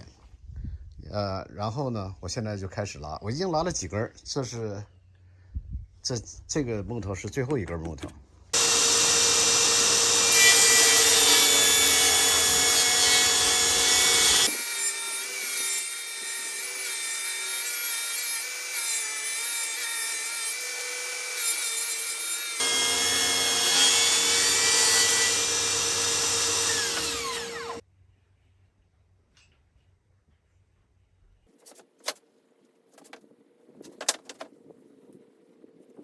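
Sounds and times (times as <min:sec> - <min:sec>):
table saw ripping wood: 0:08.6 - 0:27.8.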